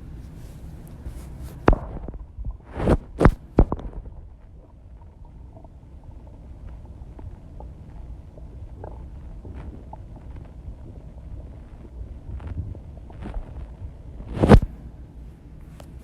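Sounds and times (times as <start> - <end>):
stomach gurgles and pops: 1.5 - 14.8
stomach growling: 1.6 - 14.8.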